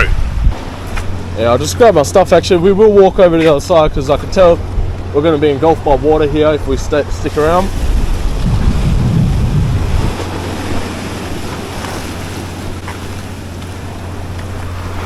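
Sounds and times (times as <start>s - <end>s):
waves washing on shore: 0.0s - 15.0s
wind buffeting microphone: 0.0s - 15.0s.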